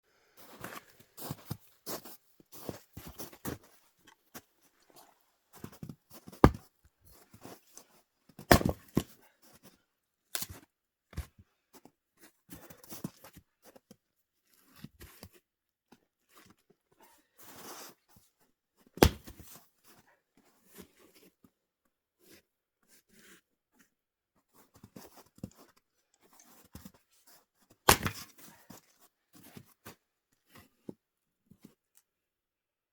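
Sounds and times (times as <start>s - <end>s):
axe strikes: 8.5s - 9.0s, 19.0s - 19.3s, 27.9s - 28.2s.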